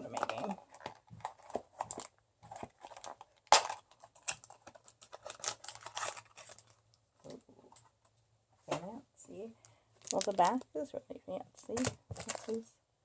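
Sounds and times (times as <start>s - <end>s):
packaging crinkling: 0.1s - 7.0s, 10.0s - 10.6s, 11.6s - 12.6s.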